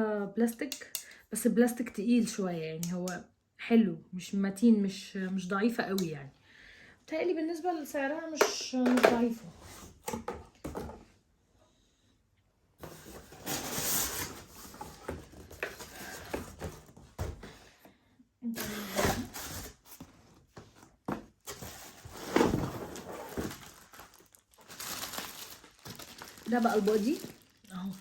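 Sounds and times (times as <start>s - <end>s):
packaging rustling and knocking: 19.1s - 28.0s.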